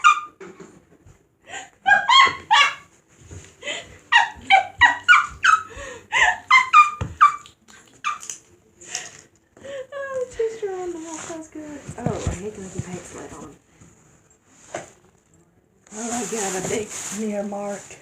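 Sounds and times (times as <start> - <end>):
small dog yipping and whining: 1.9 - 2.9, 4.2 - 5.7.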